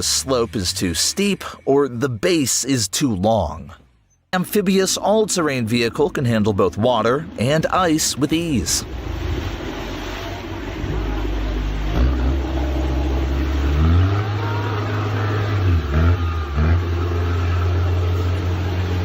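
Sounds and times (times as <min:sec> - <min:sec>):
vehicle engine revving: 0:08.8 - 0:19.0.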